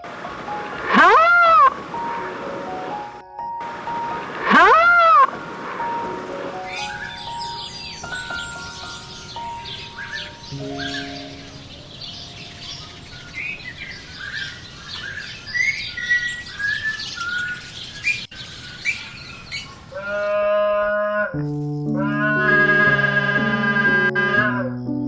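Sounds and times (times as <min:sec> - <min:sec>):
held musical note: 0:00.0 - 0:13.3
birds chirping: 0:00.0 - 0:20.4.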